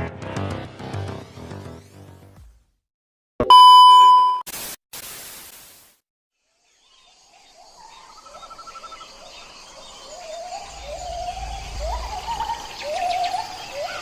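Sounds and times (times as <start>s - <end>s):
birds calling: 7.8s - 14.0s
bird trill: 8.0s - 14.0s
low rumble: 10.4s - 13.6s.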